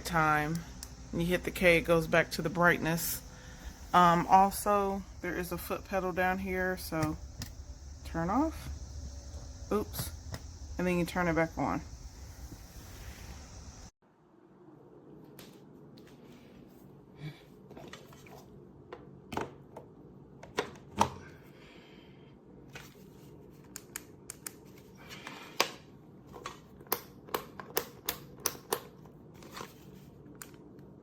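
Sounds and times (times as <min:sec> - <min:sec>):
sharp clicks and taps: 0:06.9 - 0:07.6.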